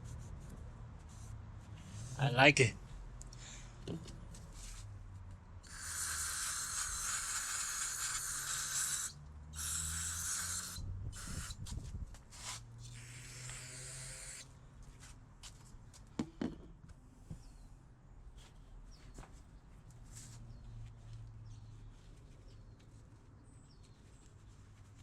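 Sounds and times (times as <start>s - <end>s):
aerosol can spraying: 5.7s - 11.7s.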